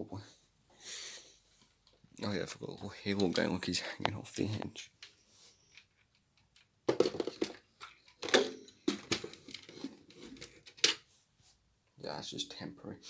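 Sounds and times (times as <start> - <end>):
plastic toys rustling and clicking: 3.1 - 11.2.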